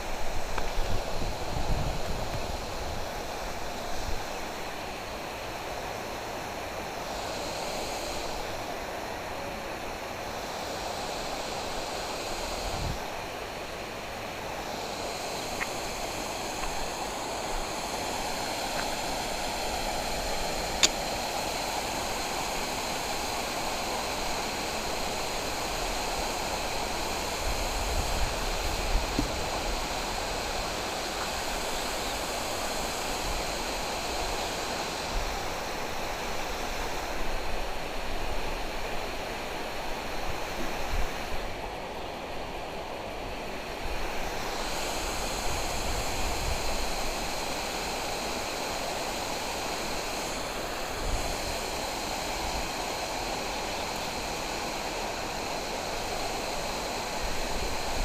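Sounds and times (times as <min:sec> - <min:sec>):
sharp click: 0:20.8 - 0:21.0.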